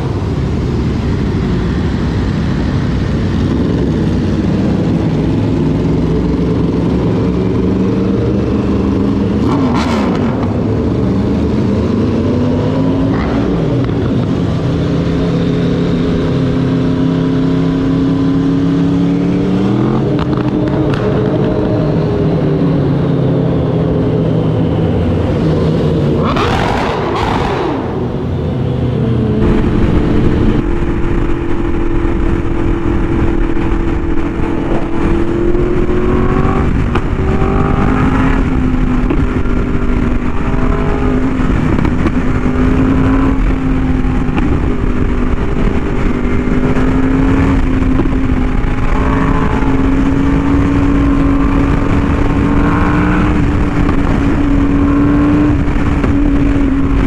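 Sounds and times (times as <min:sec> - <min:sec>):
motorcycle engine cruising: 0:00.0 - 0:57.0
wind noise: 0:00.0 - 0:57.0.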